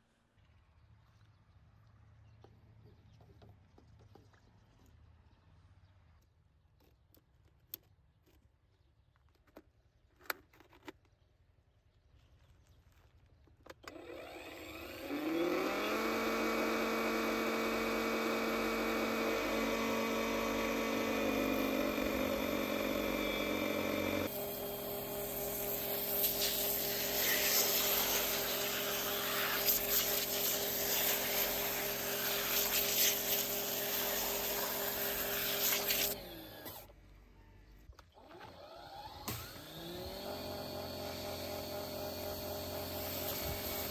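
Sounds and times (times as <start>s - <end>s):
pressure washer motor whining: 13.8s - 37.0s, 38.1s - 43.9s
pressure washer spray hiss: 25.3s - 36.2s.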